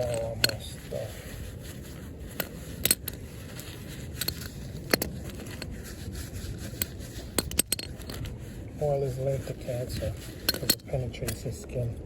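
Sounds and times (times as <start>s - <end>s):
light scraping: 0.0s - 12.0s
low background noise: 0.0s - 12.0s
wrench tools clicking and knocking: 7.4s - 8.2s, 10.4s - 11.4s.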